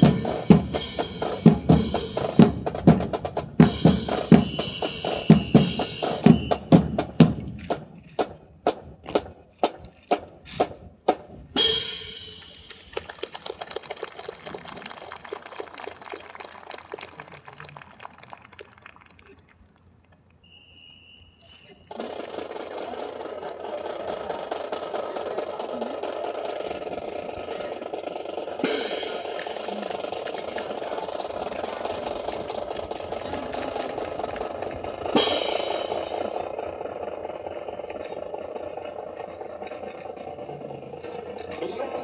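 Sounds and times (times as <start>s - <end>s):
faint rapid clatter: 12.4s - 20.4s, 21.5s - 42.0s.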